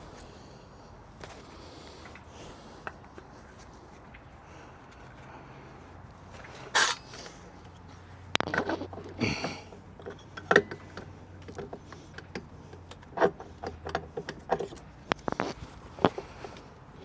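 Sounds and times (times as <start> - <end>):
tools and metal parts clinking: 6.4 - 15.5.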